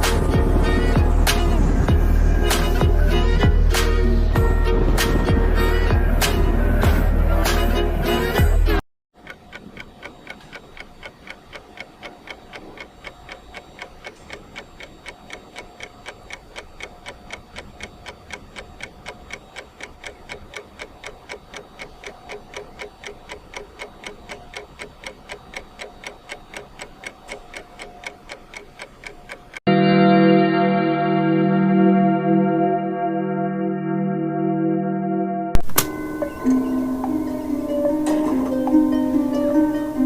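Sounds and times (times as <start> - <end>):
rapid ticking: 9.2 - 29.6
faint steady tone: 35.8 - 40.0.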